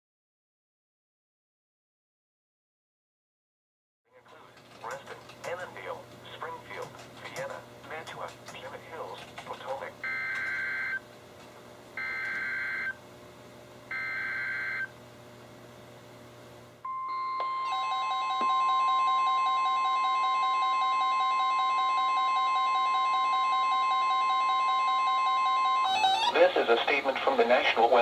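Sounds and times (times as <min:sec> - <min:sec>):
steady warning alarm tone: 0:10.0 - 0:11.1, 0:12.0 - 0:13.0, 0:13.9 - 0:15.0, 0:16.9 - 0:26.4
alert tones from weather radios: 0:12.0 - 0:12.9, 0:16.9 - 0:26.6.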